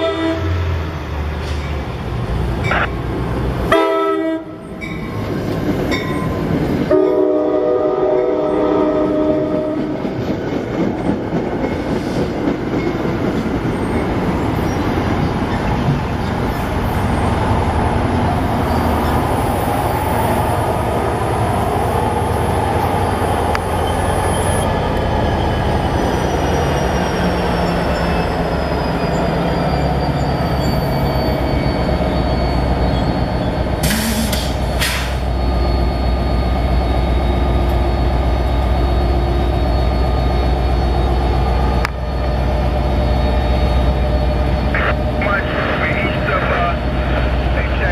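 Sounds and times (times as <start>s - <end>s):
train wheels rumbling on rail: 0.0s - 47.9s
faint high wheel squeal: 23.7s - 44.9s
low diesel drone: 33.8s - 47.9s.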